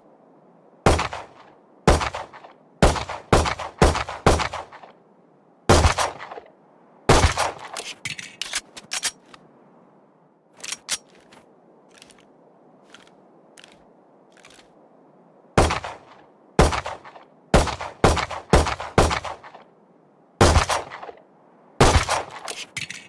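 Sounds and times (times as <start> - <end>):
small cracks: 12.9 - 14.7
light clicks: 12.9 - 14.8.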